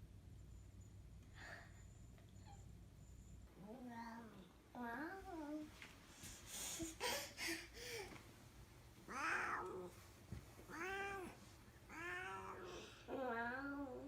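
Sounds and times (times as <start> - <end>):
cat meowing: 9.1 - 9.9, 10.7 - 13.9.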